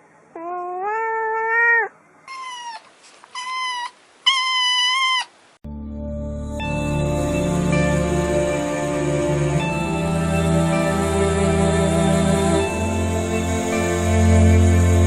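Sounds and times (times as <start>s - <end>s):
cat meowing: 0.3s - 5.4s
background music: 5.6s - 15.0s.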